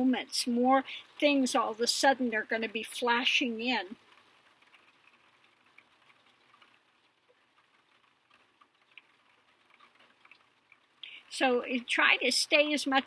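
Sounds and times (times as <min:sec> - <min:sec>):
faint small ticks: 0:03.9 - 0:11.5.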